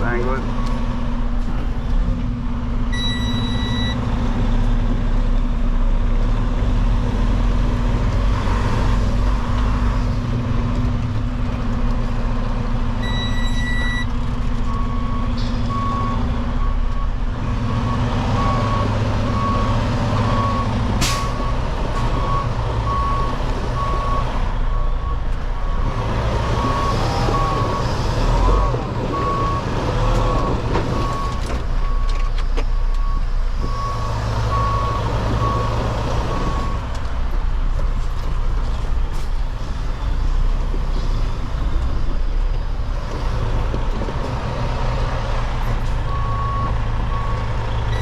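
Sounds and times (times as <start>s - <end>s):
diesel truck engine running: 0.0s - 48.0s
backup alarm beeping: 2.9s - 4.0s, 13.0s - 14.1s.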